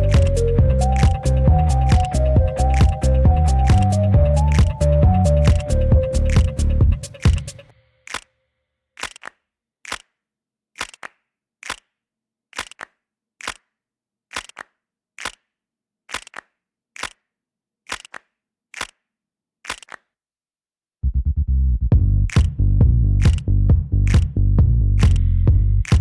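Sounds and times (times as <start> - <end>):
electronic backing track with bass: 0.0 - 7.6
clap-like percussion hits: 0.0 - 8.3, 9.0 - 10.1, 10.8 - 11.9, 12.6 - 13.7, 22.3 - 24.4, 25.0 - 25.2.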